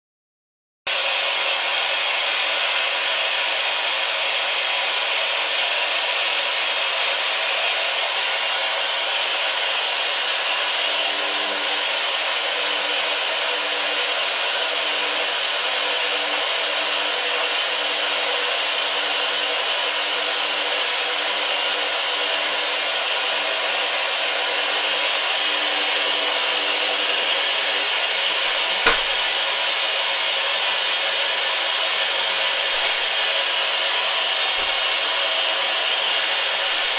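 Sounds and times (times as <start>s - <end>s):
sharp click: 28.8s - 29.2s
water running into washing machine: 32.7s - 33.4s.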